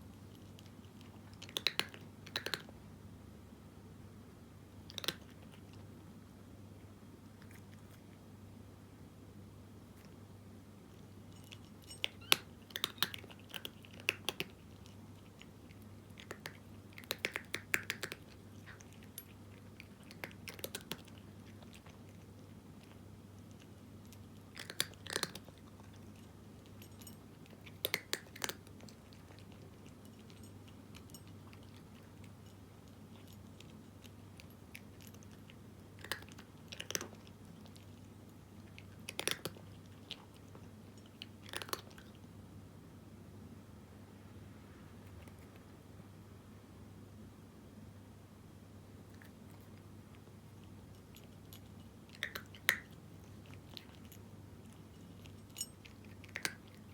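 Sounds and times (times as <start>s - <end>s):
cat crunching dry kibble: 0.1s - 2.8s, 4.8s - 5.9s, 7.3s - 8.2s, 10.8s - 42.3s, 49.1s - 56.9s.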